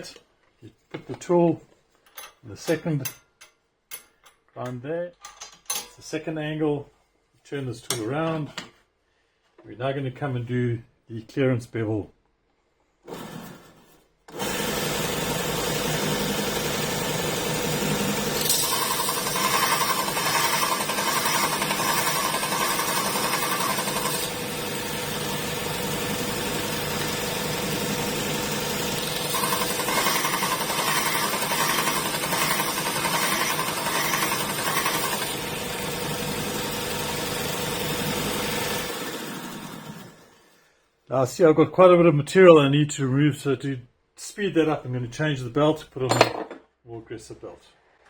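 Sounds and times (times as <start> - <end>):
drill bit grinding on belt: 14.4 - 39.7
belt sharpener motor hum: 14.4 - 40.1.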